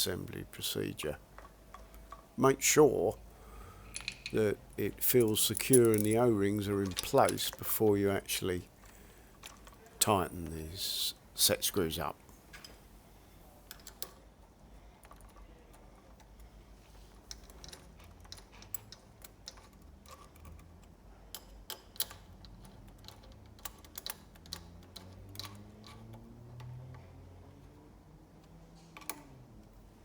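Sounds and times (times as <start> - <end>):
hand tool clicks and taps: 3.9 - 6.2.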